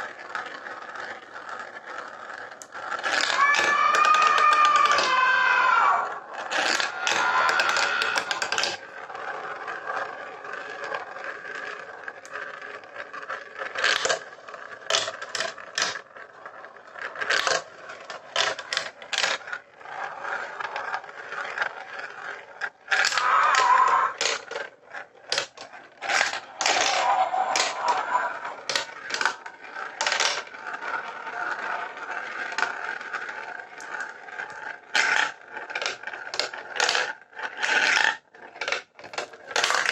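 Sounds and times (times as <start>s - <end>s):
marbles clicking and clattering: 0.0s - 39.9s
marbles rolling on plastic track: 0.0s - 39.9s.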